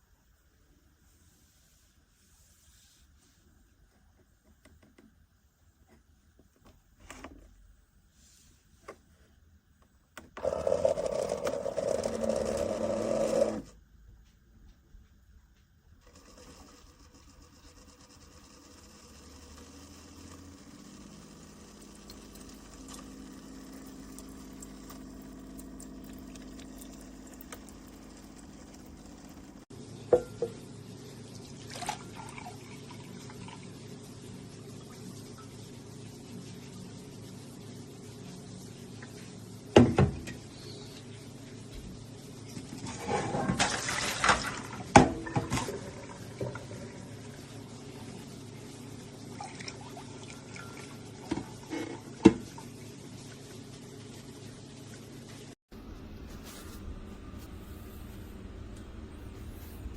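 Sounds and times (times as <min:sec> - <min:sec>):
coffee maker pumping: 0:10.2 - 0:13.8, 0:16.0 - 0:29.7
pump hum: 0:10.2 - 0:13.8, 0:16.0 - 0:38.0
liquid running into cup: 0:21.6 - 0:29.6.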